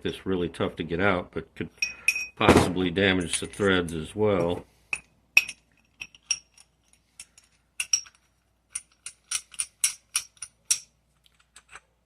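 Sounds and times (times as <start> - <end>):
small metal parts clicking: 5.0 - 12.0.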